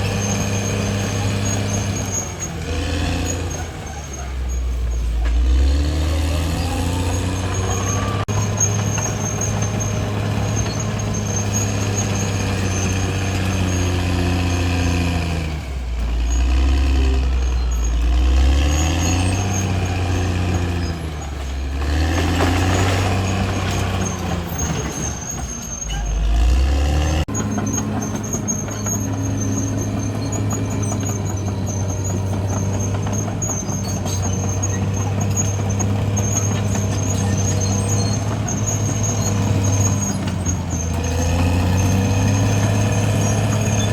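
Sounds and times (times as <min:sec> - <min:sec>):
faint high-pitched squeal: 0:00.0 - 0:05.6, 0:23.2 - 0:43.9
bulldozer diesel engine under load: 0:00.0 - 0:43.9.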